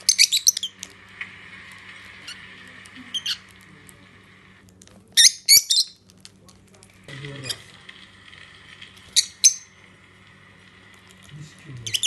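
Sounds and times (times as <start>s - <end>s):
lovebirds chirping shrilly: 0.0s - 0.8s, 5.2s - 6.0s, 9.1s - 9.7s.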